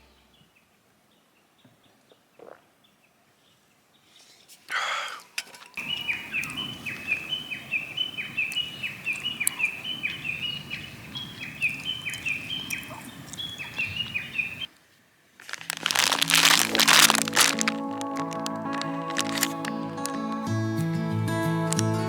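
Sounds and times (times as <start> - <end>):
loud crackling noise: 15.4 - 20.4
music: 15.9 - 22.0.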